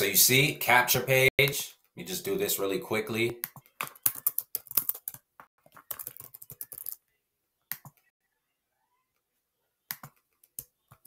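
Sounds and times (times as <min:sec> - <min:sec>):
typing on computer keyboard: 0:03.5 - 0:07.0.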